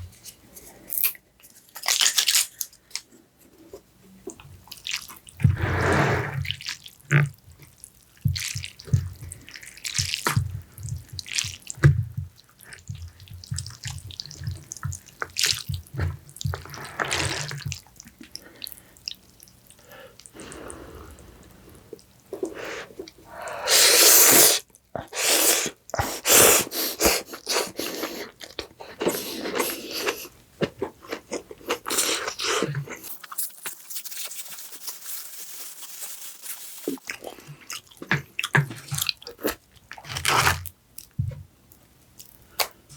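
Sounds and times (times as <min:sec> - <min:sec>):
slurping noodles: 0:05.5 - 0:06.6, 0:16.6 - 0:17.7, 0:20.4 - 0:30.3.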